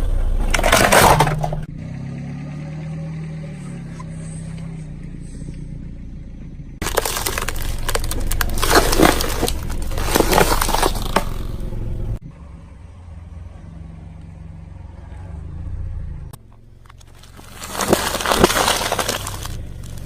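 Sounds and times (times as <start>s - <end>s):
tyre crushing crunchy objects: 0.3s - 1.7s, 6.8s - 12.2s, 16.8s - 20.0s
car engine running: 3.5s - 20.0s.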